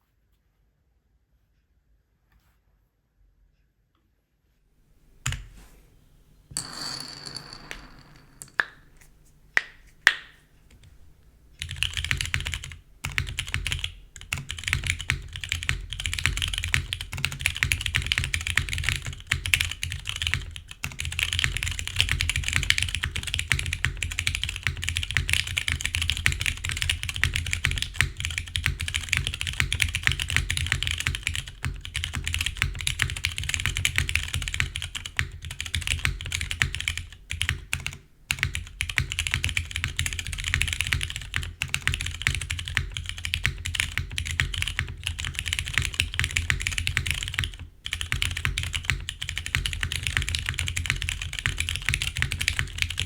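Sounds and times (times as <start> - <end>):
fast mechanical keyboard typing: 11.6 - 53.0.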